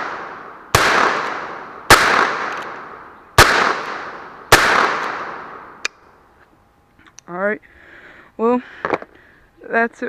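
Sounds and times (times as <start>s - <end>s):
revolver shots echoing: 0.0s - 6.0s.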